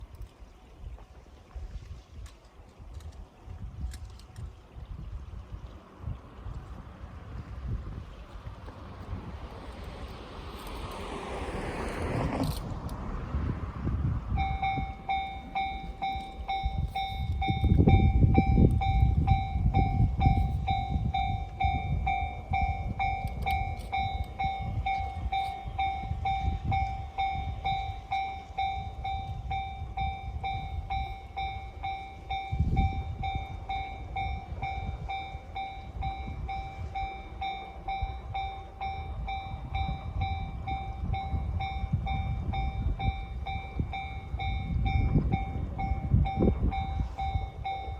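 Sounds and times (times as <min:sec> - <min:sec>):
train rumble: 0:00.0 - 0:47.9
level crossing alarm bell: 0:14.3 - 0:47.9.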